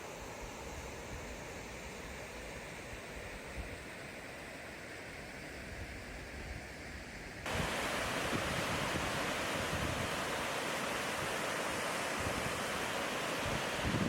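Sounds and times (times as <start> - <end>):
waterfall rushing: 7.5 - 14.0.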